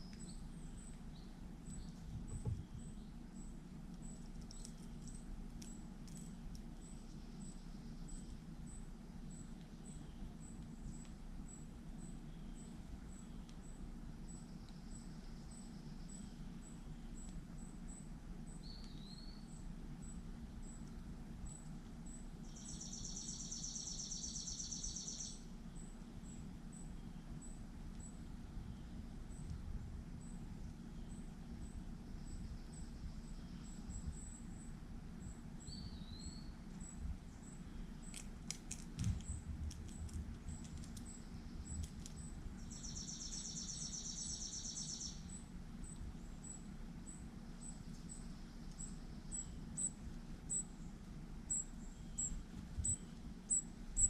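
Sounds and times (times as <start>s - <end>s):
steady low hum: 0.0s - 54.0s
faint high chirp: 6.1s - 29.6s, 40.6s - 50.9s.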